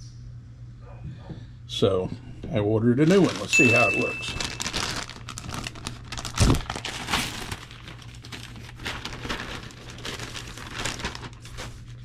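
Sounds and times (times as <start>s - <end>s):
plastic packaging crinkling: 2.9s - 12.0s.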